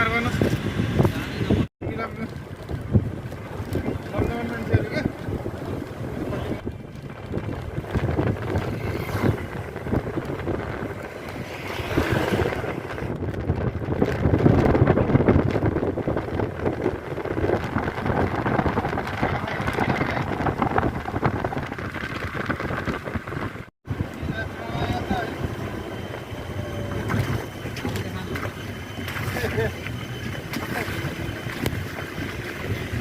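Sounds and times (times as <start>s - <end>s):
rumbling rushing travel noise: 0.0s - 33.0s
wind buffeting microphone: 0.0s - 33.0s.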